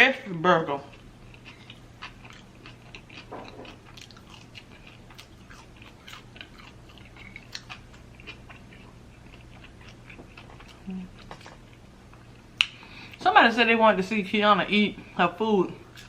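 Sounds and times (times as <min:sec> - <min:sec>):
person chewing: 0:00.9 - 0:13.2.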